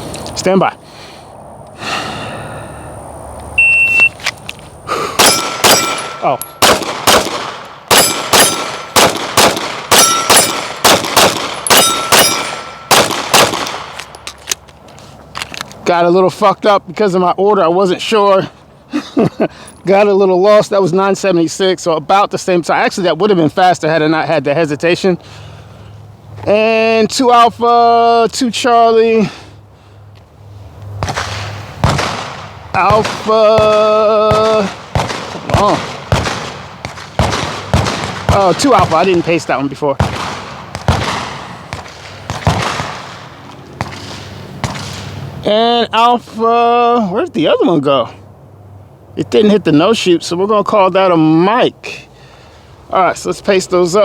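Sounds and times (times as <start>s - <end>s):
steel plate ringing: 5.2s - 6.6s, 7.9s - 9.0s, 9.9s - 10.8s, 11.6s - 13.0s
gunshots with echo: 5.2s - 14.0s, 31.8s - 45.0s
pistol shots: 5.2s - 14.1s, 31.8s - 39.4s, 40.0s - 44.0s.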